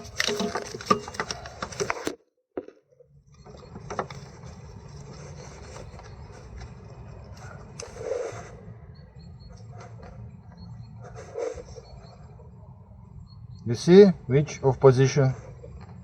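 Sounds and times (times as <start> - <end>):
clicks and knocks of parts handled: 0.0 - 2.7
steady low hum: 3.1 - 16.0.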